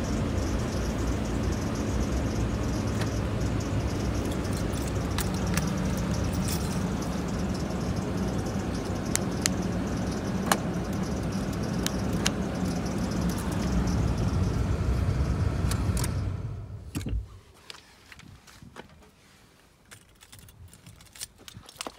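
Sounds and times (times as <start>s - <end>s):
car engine idling: 0.0s - 17.2s
sharp clicks: 8.3s - 13.9s.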